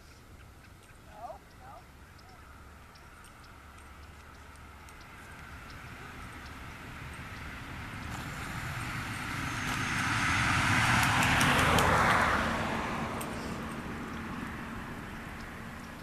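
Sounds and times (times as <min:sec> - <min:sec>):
car driving past: 0:05.2 - 0:16.0.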